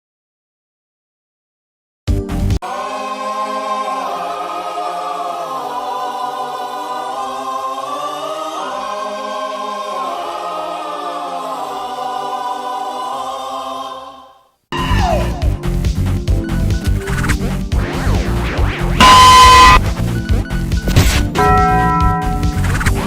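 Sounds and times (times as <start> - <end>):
choir singing sustained chord: 2.6 - 14.4.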